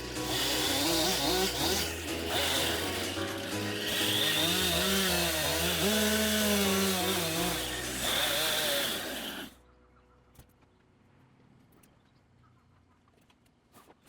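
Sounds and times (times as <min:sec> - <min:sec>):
chainsaw cutting log: 0:00.0 - 0:09.6.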